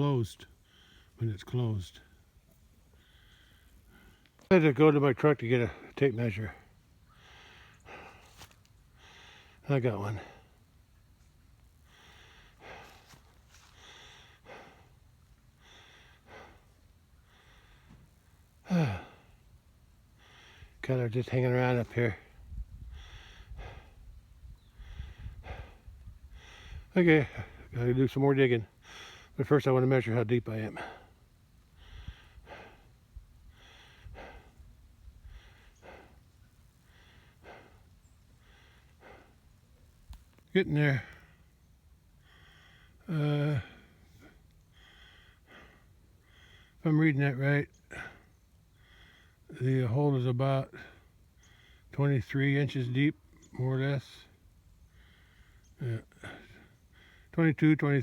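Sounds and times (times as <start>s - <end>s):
man breathing hard: 0.5s - 1.2s, 2.8s - 4.5s, 5.7s - 10.7s, 11.7s - 21.4s, 22.0s - 27.8s, 28.6s - 29.4s, 30.7s - 46.8s, 47.8s - 49.6s, 54.2s - 57.4s
man sighing: 18.6s - 19.3s.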